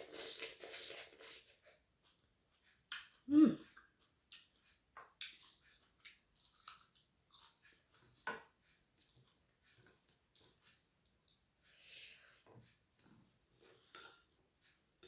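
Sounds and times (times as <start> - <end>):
chewing and wet mouth smacks: 3.8 - 8.0.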